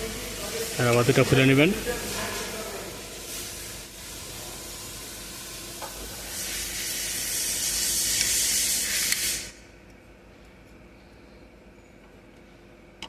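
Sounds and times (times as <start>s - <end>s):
pressurised spray hissing: 0.0s - 9.6s.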